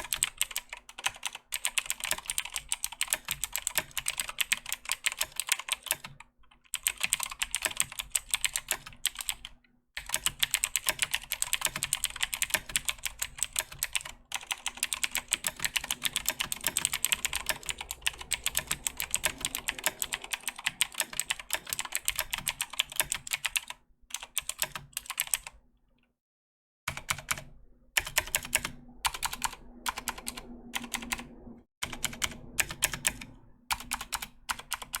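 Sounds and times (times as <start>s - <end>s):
mechanical keyboard typing: 0.0s - 25.6s, 26.9s - 35.0s.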